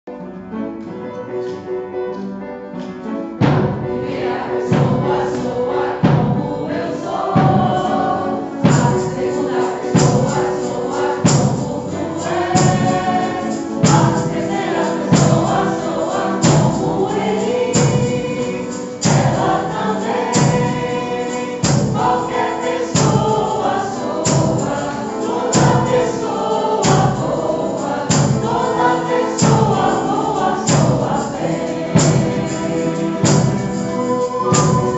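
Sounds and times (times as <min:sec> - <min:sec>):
steady drum beat: 0:03.4 - 0:34.9
group of voices singing: 0:03.6 - 0:34.9.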